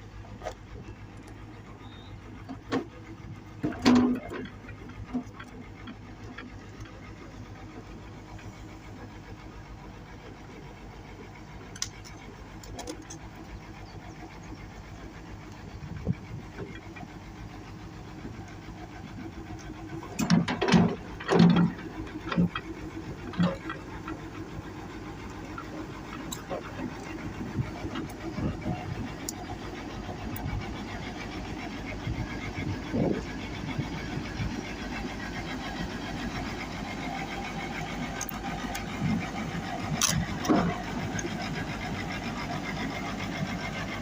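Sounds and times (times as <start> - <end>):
excavator diesel engine running: 0.0 - 44.0
metal knocks and clanks: 3.6 - 5.5, 20.1 - 22.7.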